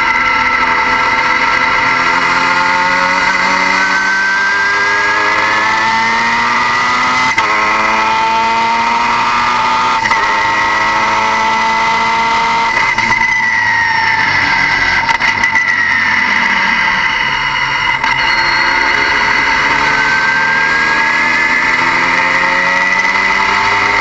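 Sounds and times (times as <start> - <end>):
car engine under load: 0.0 - 24.0.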